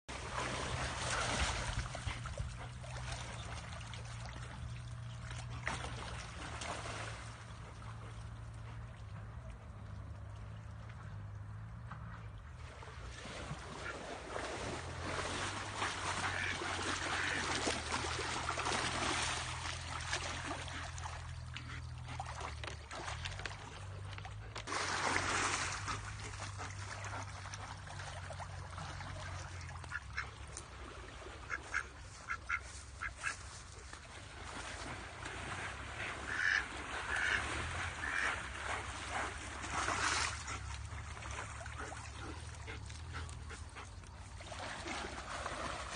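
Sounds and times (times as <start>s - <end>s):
ducks quacking: 16.1s - 18.2s, 31.5s - 33.6s, 36.0s - 38.8s.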